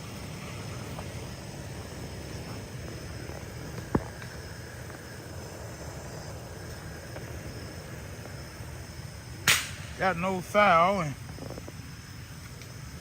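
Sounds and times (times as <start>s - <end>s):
outdoor rumble and hiss: 0.0s - 13.0s
sharp click: 9.5s - 9.8s.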